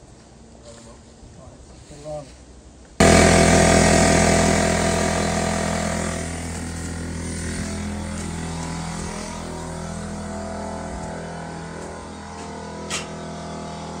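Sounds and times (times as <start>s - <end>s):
engine running: 3.0s - 14.0s.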